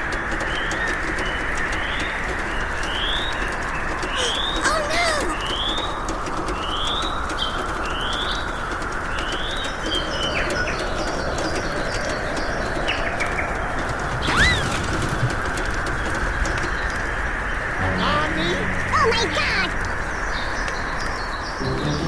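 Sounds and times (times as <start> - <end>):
birds chirping: 0.4 - 22.0.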